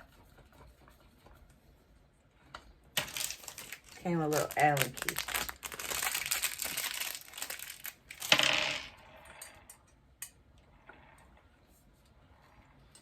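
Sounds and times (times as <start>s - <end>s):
plastic packaging crinkling: 3.0s - 8.3s.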